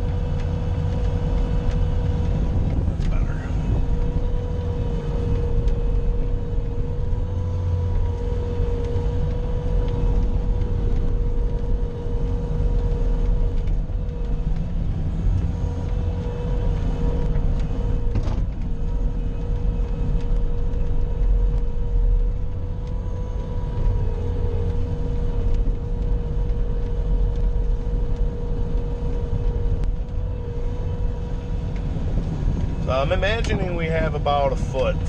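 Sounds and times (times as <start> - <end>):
loader engine rumble with whine: 0.0 - 35.0.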